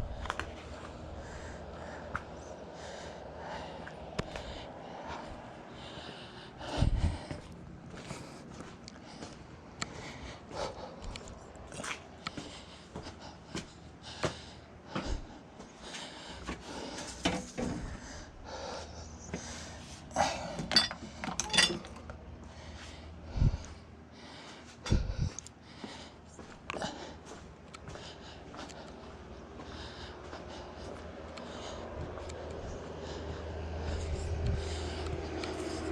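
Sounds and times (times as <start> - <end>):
breathing: 0.1 - 11.4, 12.2 - 35.9
clicks and clatters of objects handled: 20.6 - 22.2.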